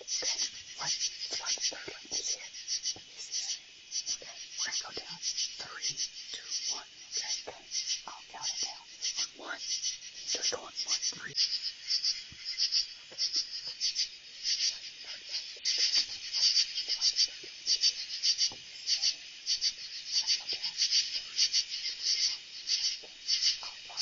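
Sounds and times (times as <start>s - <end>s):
night insects chirping: 0.0s - 24.0s.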